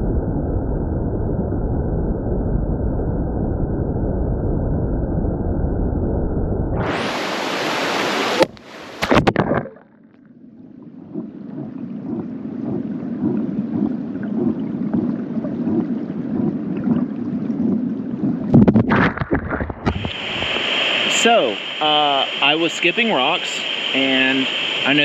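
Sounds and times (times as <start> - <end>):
rushing creek water: 7.0 - 9.2, 19.8 - 25.0.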